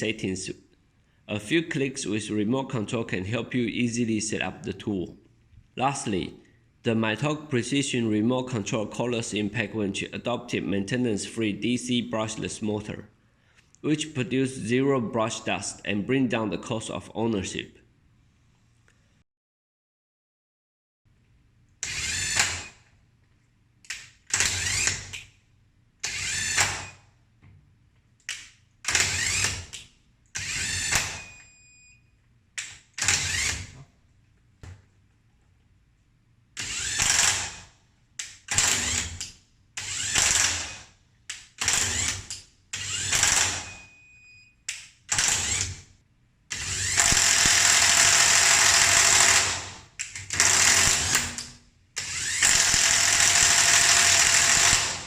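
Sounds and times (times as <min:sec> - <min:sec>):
cordless impact wrench bursts: 0:21.8 - 0:22.8, 0:24.3 - 0:25.2, 0:26.0 - 0:27.1, 0:28.8 - 0:29.8, 0:30.4 - 0:31.3, 0:32.7 - 0:33.7, 0:36.6 - 0:37.8, 0:38.4 - 0:40.9, 0:41.5 - 0:43.8, 0:45.1 - 0:45.9, 0:46.5 - 0:55.0.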